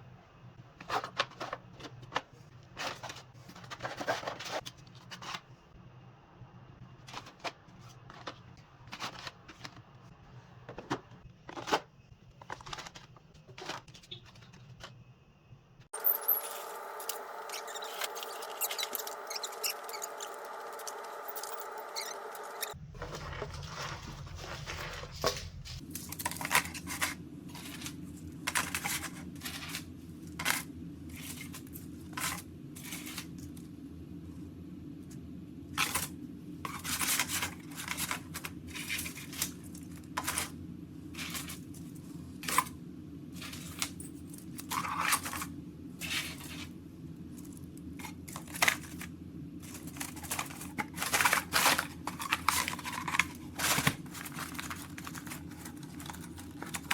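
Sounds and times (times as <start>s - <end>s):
steady background hum: 0.0s - 56.9s
packaging clicks and rustles: 0.8s - 5.6s, 7.0s - 15.0s, 47.3s - 56.9s.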